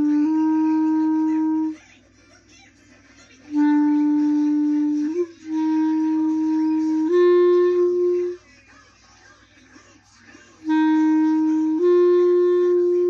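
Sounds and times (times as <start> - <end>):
clarinet long held notes: 0.0 - 1.8, 3.5 - 8.4, 10.6 - 13.0.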